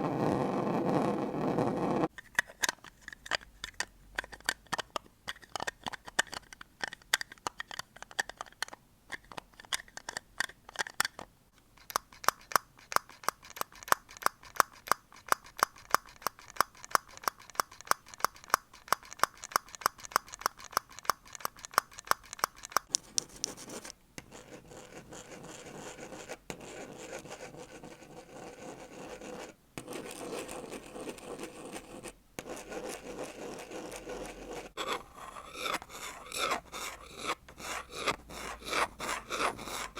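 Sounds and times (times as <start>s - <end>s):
scratching and rubbing on surface: 0.0s - 2.1s, 20.0s - 39.9s.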